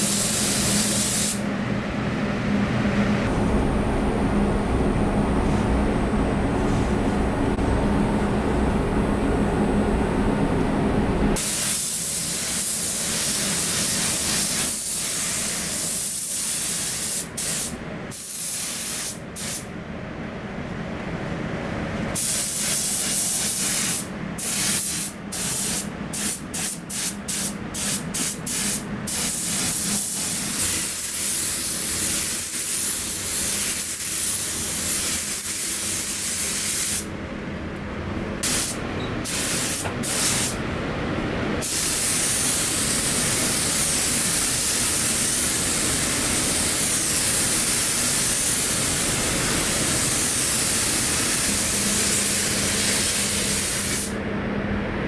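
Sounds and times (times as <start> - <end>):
air gun hissing compressed air: 0.0 - 1.4, 11.4 - 19.7, 22.2 - 37.1, 38.4 - 40.6, 41.6 - 54.2.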